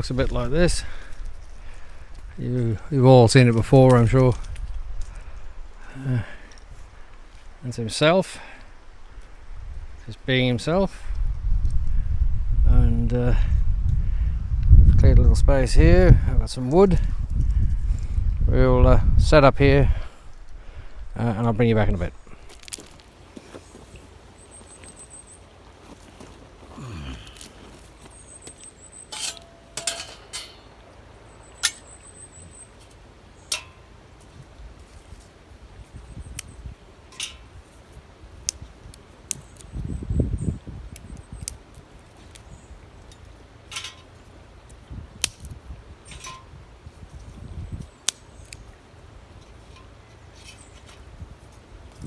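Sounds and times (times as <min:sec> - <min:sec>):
wind buffeting microphone: 0:00.0 - 0:05.8, 0:10.8 - 0:22.6, 0:35.6 - 0:41.7, 0:44.8 - 0:48.0, 0:50.9 - 0:52.0
camp gear clicks and knocks: 0:25.7 - 0:31.0, 0:36.4 - 0:39.7, 0:41.0 - 0:48.7, 0:49.3 - 0:52.0.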